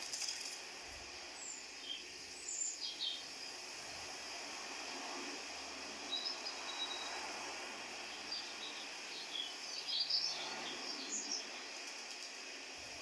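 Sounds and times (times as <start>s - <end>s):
outdoor ambience hiss: 0.0s - 13.0s
birds chirping: 1.4s - 3.4s, 6.0s - 7.2s, 7.9s - 11.8s.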